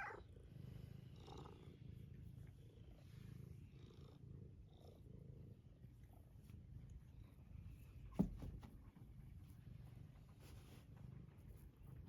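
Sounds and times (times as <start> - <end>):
cat purring: 0.0 - 8.1.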